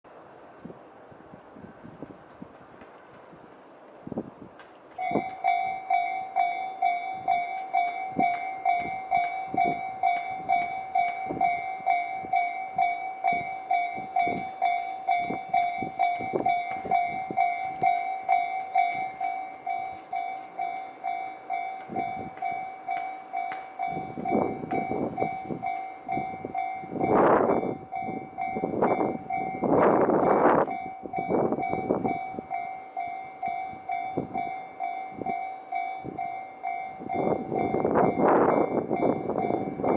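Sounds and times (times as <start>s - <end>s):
train passing: 0.1s - 39.9s
level crossing bell dinging: 5.0s - 29.8s.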